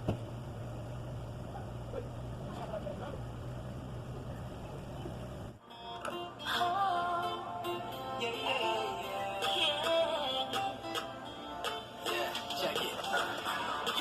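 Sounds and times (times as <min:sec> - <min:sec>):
low background hum with hiss: 0:00.0 - 0:12.5
pop music with singing: 0:06.1 - 0:14.0.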